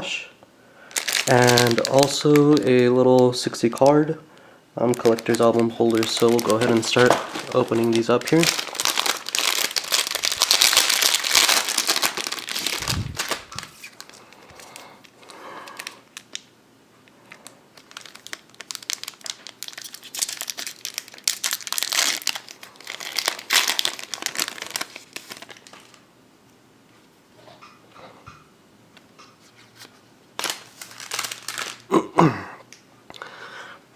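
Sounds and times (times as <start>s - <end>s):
packaging crinkling and tearing: 0.9s - 4.2s, 4.8s - 16.5s, 17.3s - 26.0s, 29.8s - 32.0s.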